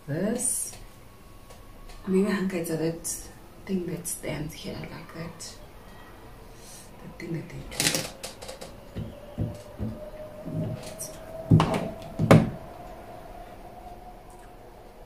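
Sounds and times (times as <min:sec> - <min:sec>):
handling knocks: 0:11.5 - 0:12.6.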